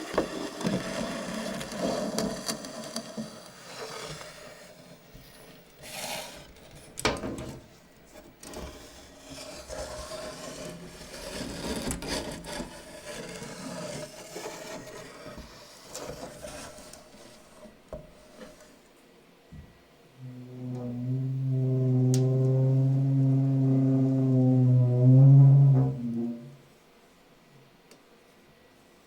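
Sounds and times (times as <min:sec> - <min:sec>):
rubbing and scraping on hard surface: 0:00.0 - 0:07.0, 0:07.6 - 0:18.8.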